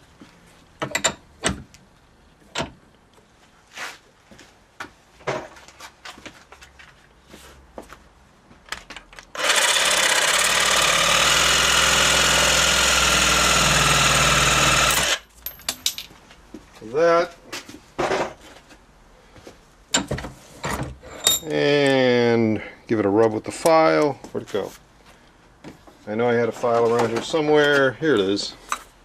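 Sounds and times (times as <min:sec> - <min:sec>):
parts clicking and knocking: 0:00.8 - 0:03.3, 0:08.6 - 0:10.4, 0:14.7 - 0:16.4, 0:19.9 - 0:22.0
power tool cutting metal: 0:09.4 - 0:15.3.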